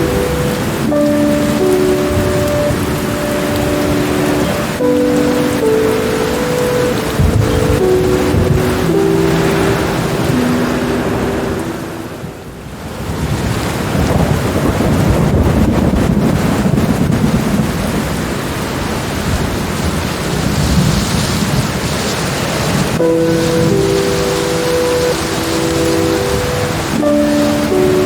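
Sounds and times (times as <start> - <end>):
low rumble of thunder: 0.0 - 10.6, 13.0 - 24.7
steady rain: 0.0 - 28.0.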